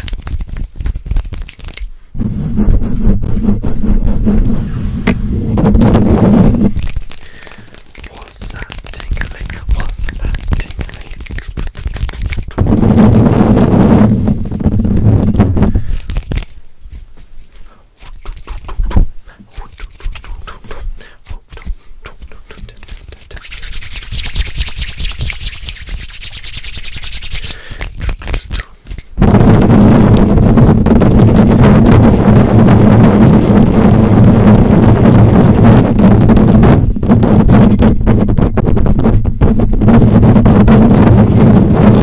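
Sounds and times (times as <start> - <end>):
rubbing on microphone: 0.0 - 42.0
scratching and tapping on microphone: 0.0 - 42.0
bristly brushing hiss: 7.0 - 12.5, 16.9 - 27.8.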